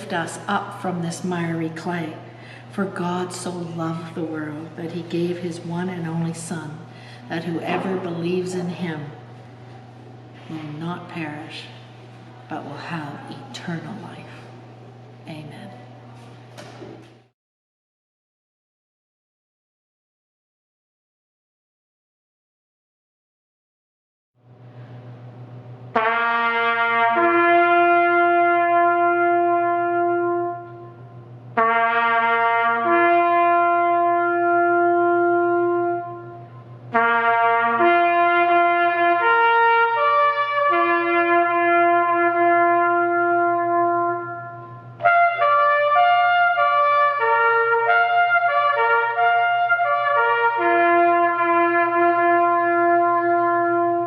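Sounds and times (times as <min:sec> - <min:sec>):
low hum: 0:24.4 - 0:54.0
solo trumpet: 0:25.9 - 0:54.0.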